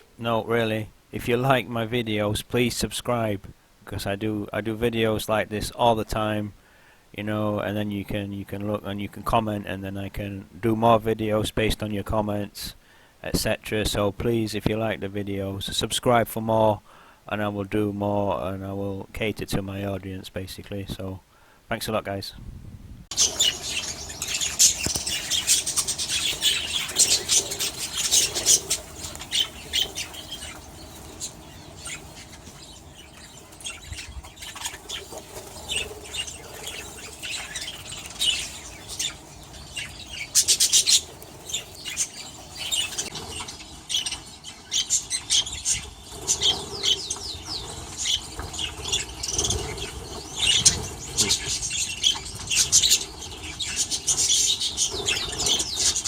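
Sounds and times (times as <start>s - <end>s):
small birds chirping and twittering: 23.1s - 56.0s.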